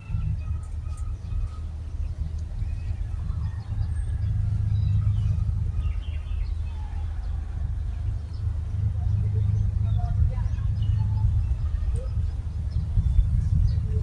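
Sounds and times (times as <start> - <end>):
low rumble: 0.0 - 14.0.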